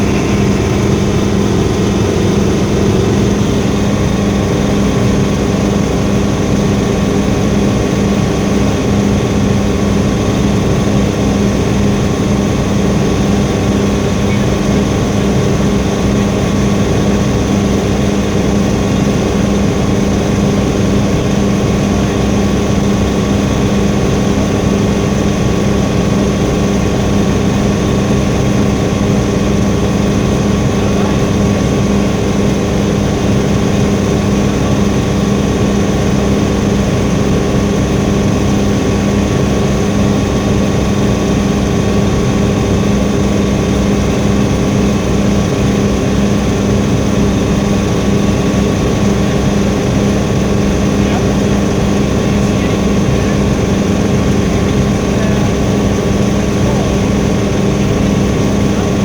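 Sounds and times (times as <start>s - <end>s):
helicopter engine and rotor: 0.0s - 59.0s.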